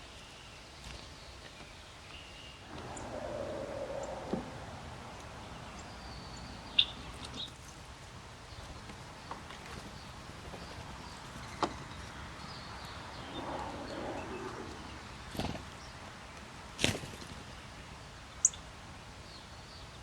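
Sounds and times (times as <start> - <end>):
birds calling faintly: 0.5 - 20.0
outdoor hiss: 2.4 - 16.8.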